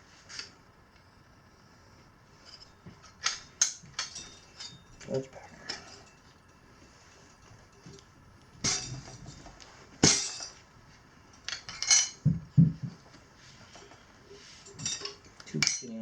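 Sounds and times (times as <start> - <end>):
dull thuds: 12.2 - 13.1.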